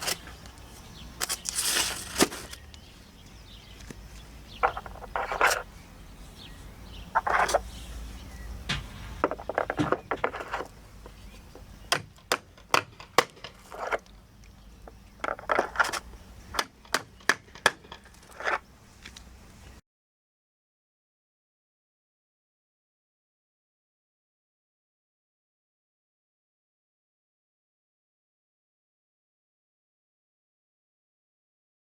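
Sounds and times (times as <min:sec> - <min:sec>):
scraping and crunching: 0:00.0 - 0:05.8, 0:06.4 - 0:19.3.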